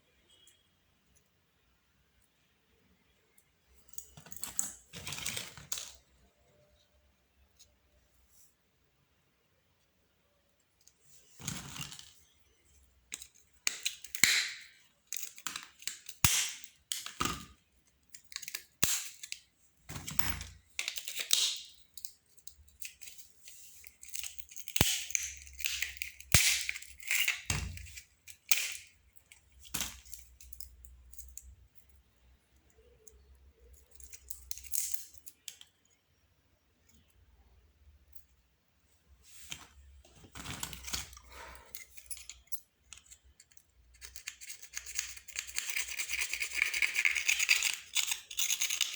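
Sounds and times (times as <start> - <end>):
plastic parts clicking and cracking: 13.1 - 31.9, 32.6 - 36.0, 40.3 - 48.9.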